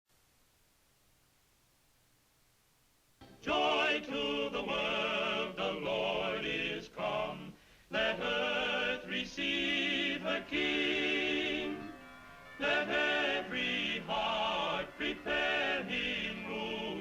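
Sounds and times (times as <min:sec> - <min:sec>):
choir singing with vibrato: 0:03.4 - 0:17.0.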